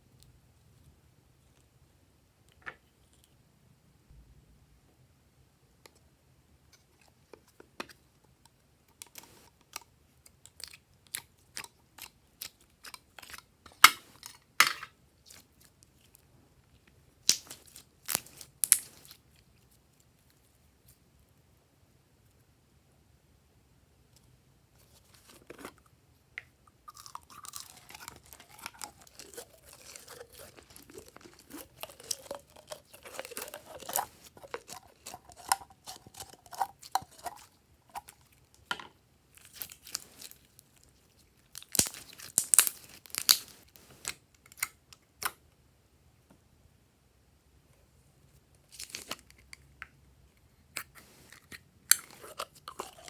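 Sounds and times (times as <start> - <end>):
slime squishing and crackling: 17.2 - 19.2, 26.9 - 38.2, 39.4 - 44.1.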